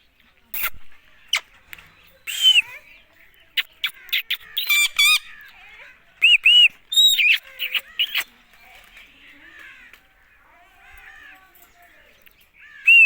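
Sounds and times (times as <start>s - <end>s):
parrot squawks and chirps: 2.3s - 2.8s, 3.6s - 5.5s, 6.2s - 8.3s.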